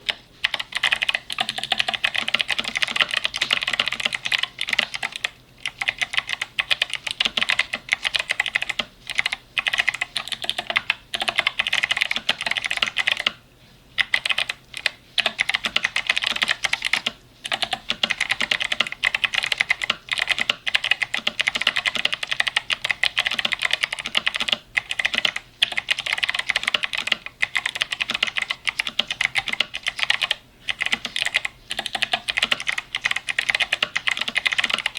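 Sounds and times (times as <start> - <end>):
typing on clicky mechanical keyboard: 0.1 - 13.4, 14.0 - 34.9.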